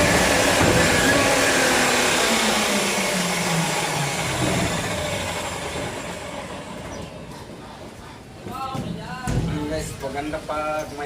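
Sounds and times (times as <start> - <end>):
cut-off wheel cutting steel: 0.0 - 6.8.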